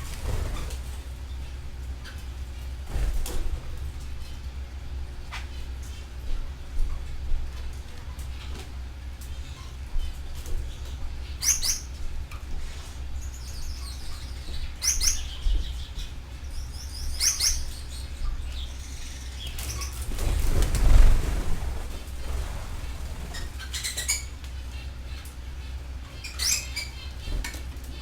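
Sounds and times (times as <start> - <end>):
steady low hum: 0.0 - 28.0
canaries chirping: 11.3 - 12.0, 13.2 - 27.4.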